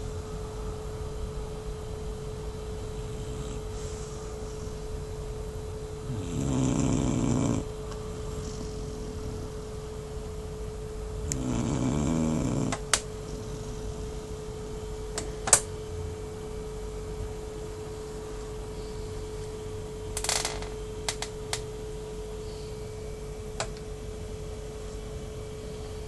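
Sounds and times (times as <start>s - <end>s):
steady hum tone: 0.0s - 26.0s
pet snoring: 2.8s - 4.4s, 6.0s - 10.3s, 11.2s - 14.6s.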